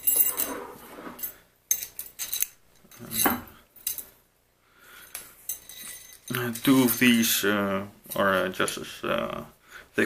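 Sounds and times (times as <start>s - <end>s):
metal rings clinking: 0.0s - 4.2s, 5.1s - 7.2s.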